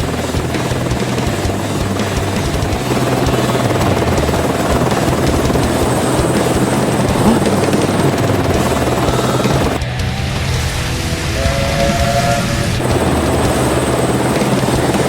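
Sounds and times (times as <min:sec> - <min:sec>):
low hum: 0:03.7 - 0:09.8.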